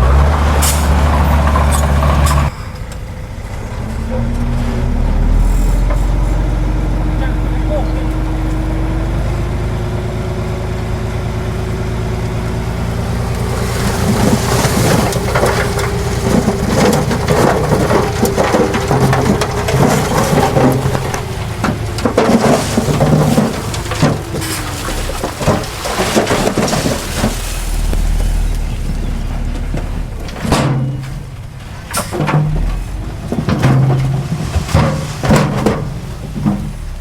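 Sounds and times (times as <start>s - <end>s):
diesel engine drone: 0.0s - 37.0s
soil and stones crunching: 12.4s - 37.0s.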